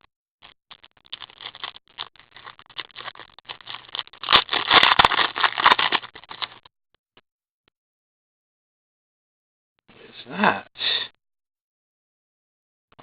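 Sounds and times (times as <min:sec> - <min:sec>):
foil wrapper crinkling and tearing: 0:00.4 - 0:06.7.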